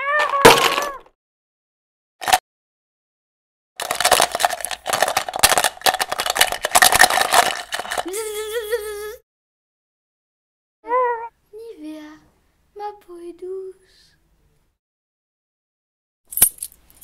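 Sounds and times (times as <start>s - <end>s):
small hard objects rattling: 3.8s - 8.3s.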